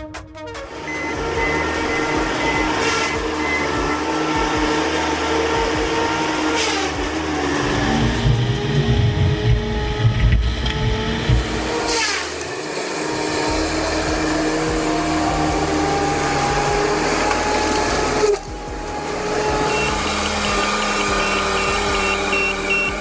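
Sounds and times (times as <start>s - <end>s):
machine motor running: 0.7s - 23.0s
fast regular beeping: 0.8s - 6.4s, 18.6s - 23.0s.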